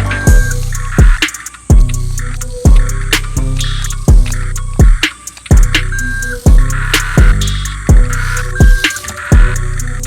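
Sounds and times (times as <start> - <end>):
hi-hat ticks: 0.0 - 10.0
hip hop music: 0.0 - 10.0
booming kick drum: 6.5 - 8.8.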